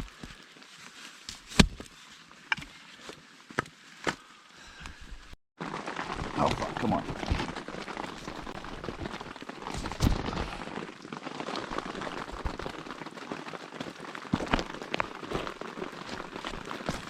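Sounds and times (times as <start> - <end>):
steady rain falling: 5.6 - 17.0.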